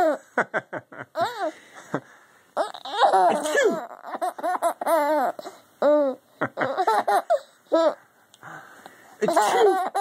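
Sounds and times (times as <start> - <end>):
young child giggling: 2.9 - 5.3, 9.2 - 10.0.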